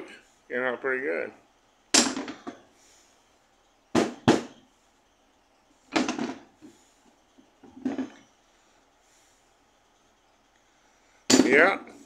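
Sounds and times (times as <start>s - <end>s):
hammers clattering: 11.3s - 11.8s.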